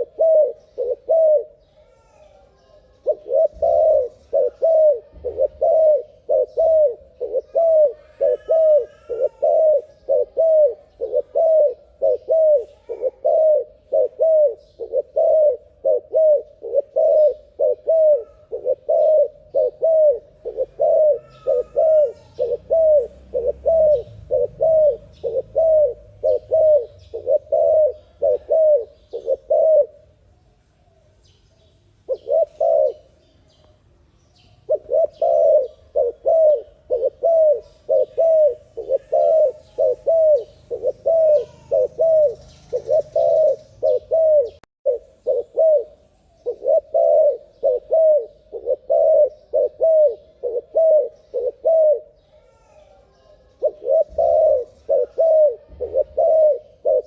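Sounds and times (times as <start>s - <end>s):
dove cooing: 0.0s - 30.2s, 32.0s - 33.2s, 34.4s - 57.0s
small birds chirping: 0.0s - 57.0s.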